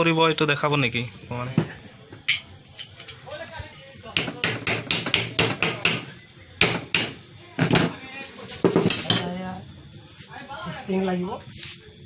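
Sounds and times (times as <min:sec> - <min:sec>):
hammer tapping on metal: 0:04.2 - 0:07.2.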